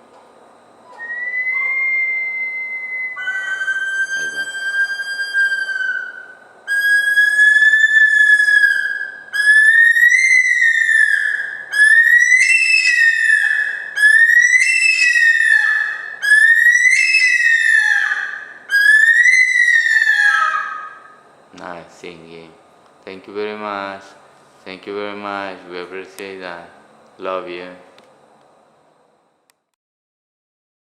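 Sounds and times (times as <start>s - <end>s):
bird wailing whistled call: 0.9s - 21.2s.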